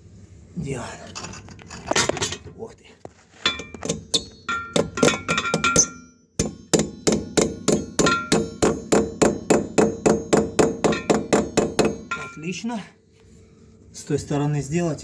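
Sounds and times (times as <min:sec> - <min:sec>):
hammer blows with metallic ring: 0:03.5 - 0:12.6.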